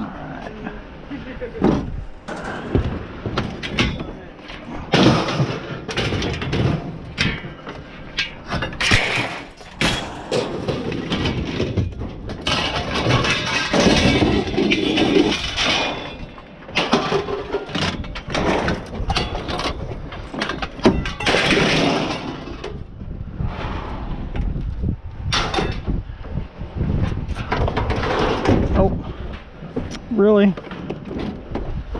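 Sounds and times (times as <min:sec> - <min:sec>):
scrap metal clanking and rattling: 0:01.6 - 0:23.0, 0:25.3 - 0:26.0, 0:27.0 - 0:30.0.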